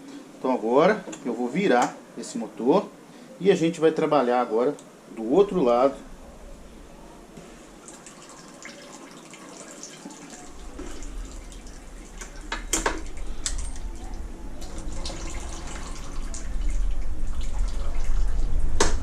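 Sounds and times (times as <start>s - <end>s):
low rumble: 5.4s - 7.8s, 10.4s - 19.0s.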